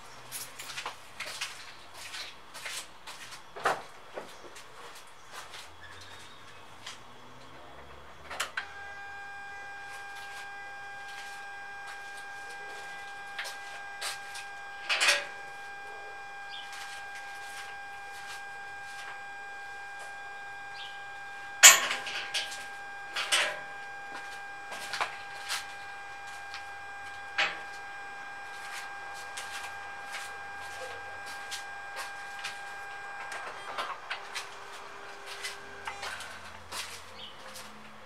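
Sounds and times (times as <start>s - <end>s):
high-pitched buzzing tone: 8.6s - 36.3s.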